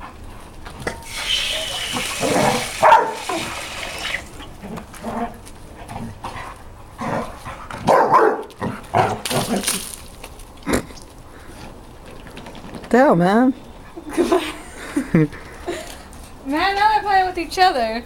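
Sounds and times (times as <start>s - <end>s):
dogs barking and yipping: 1.1s - 4.8s, 7.1s - 9.2s.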